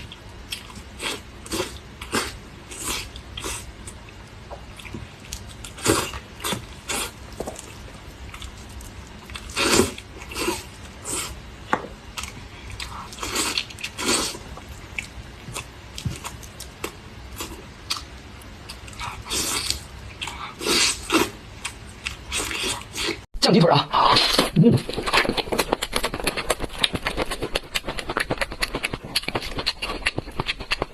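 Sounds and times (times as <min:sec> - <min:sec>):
person chewing and biting food: 0:12.1 - 0:23.2, 0:24.1 - 0:30.9.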